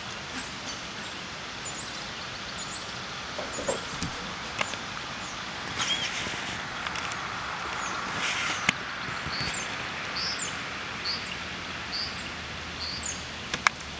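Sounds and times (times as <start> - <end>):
outdoor background noise: 0.0 - 13.9
small bird chirping: 0.4 - 13.8.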